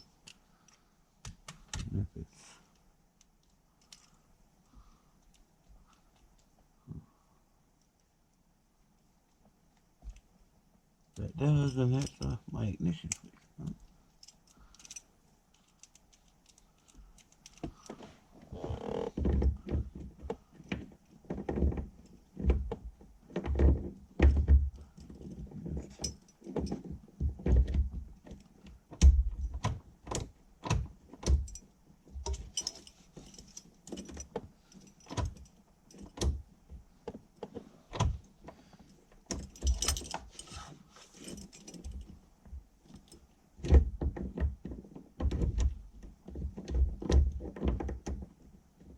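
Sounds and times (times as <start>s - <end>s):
keys jangling: 11.6s - 12.4s, 14.2s - 17.9s, 31.2s - 36.2s, 39.3s - 42.2s, 42.9s - 43.2s
tools clicking and knocking: 11.6s - 12.4s, 13.1s - 18.0s, 18.8s - 38.3s, 39.3s - 48.9s.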